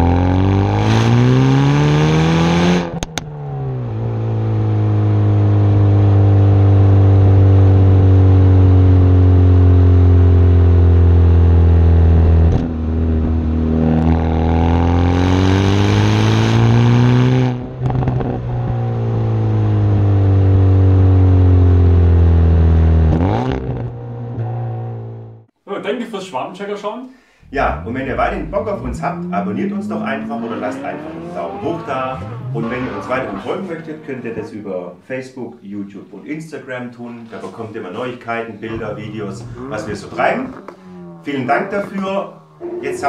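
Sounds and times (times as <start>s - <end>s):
car engine accelerating: 0.0s - 25.5s, 27.4s - 35.0s, 37.5s - 43.0s.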